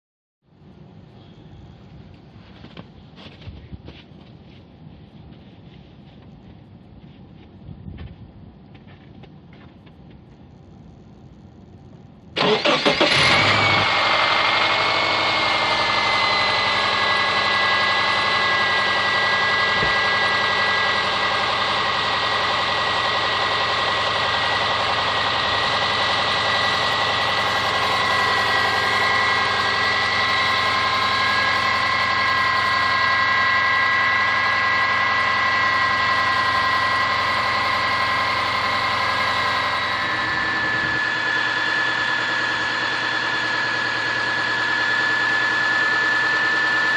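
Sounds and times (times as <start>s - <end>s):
high whine: 8.8s - 46.9s
car engine idling: 10.5s - 46.9s.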